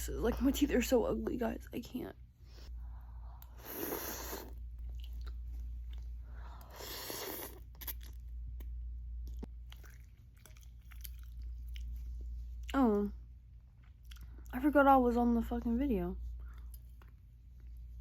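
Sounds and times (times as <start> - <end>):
low steady hum: 0.0 - 18.0
chewing noodles: 3.4 - 12.8, 13.6 - 14.5.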